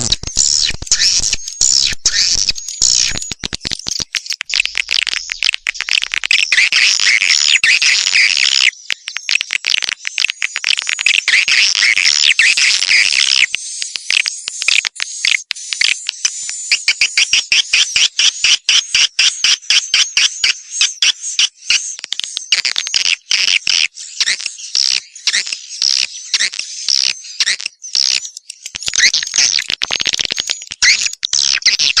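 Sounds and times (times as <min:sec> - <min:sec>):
sharp clicks: 0:00.0 - 0:06.9
swiftlets twittering: 0:00.0 - 0:07.2.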